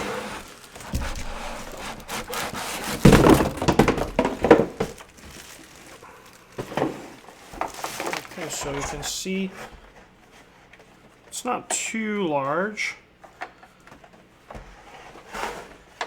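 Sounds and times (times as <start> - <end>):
knocks and thunks: 0.0 - 5.6
cardboard box handling: 0.0 - 8.8.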